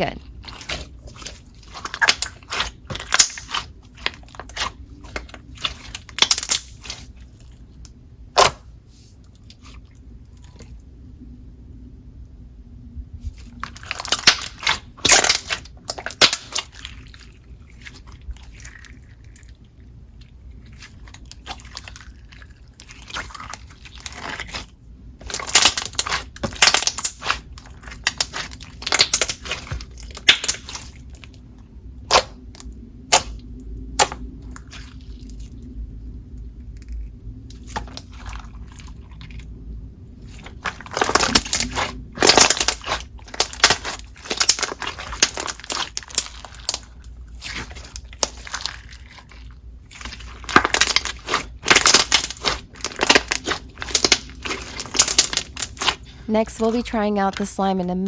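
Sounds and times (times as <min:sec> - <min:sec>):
slime clicking and popping: 0:00.5 - 0:07.1, 0:13.6 - 0:16.8, 0:25.2 - 0:30.9, 0:32.1 - 0:33.3, 0:34.0 - 0:34.2, 0:40.5 - 0:49.3, 0:49.9 - 0:56.0
sequins crunching: 0:40.3 - 0:49.2, 0:49.9 - 0:57.5.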